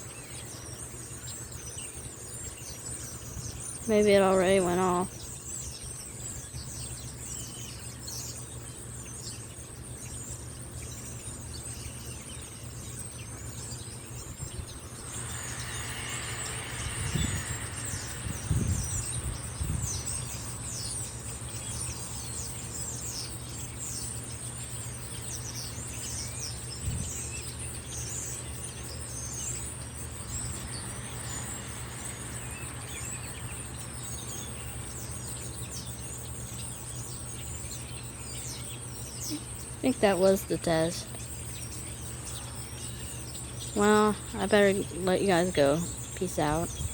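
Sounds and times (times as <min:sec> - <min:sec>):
birds chirping: 0:00.0 - 0:46.9
insect drone: 0:00.0 - 0:46.9
low steady hum: 0:10.0 - 0:27.0, 0:27.6 - 0:46.9.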